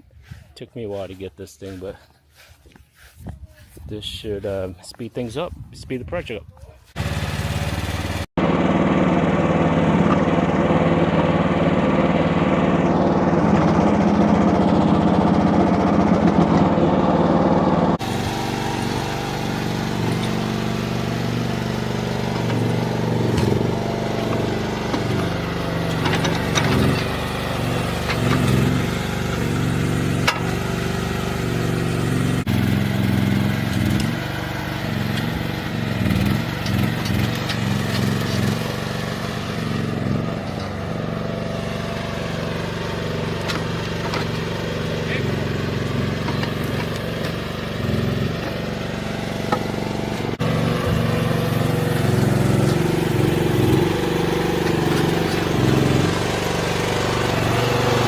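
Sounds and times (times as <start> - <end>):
engine running: 6.8 - 58.0
engine knocks: 42.7 - 56.2.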